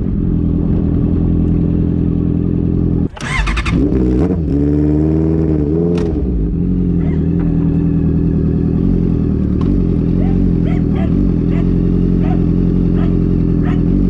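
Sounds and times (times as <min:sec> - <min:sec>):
exhaust crack: 0:00.0 - 0:14.0
motorcycle engine revving and idling: 0:00.0 - 0:14.0.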